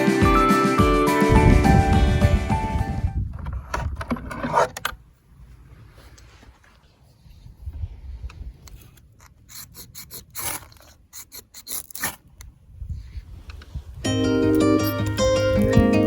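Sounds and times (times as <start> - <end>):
plucked-string background music: 0.0 - 3.0, 14.1 - 16.0.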